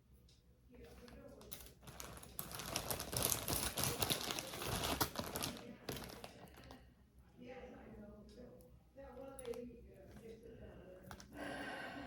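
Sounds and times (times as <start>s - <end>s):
wrapping crinkling: 1.4s - 6.8s.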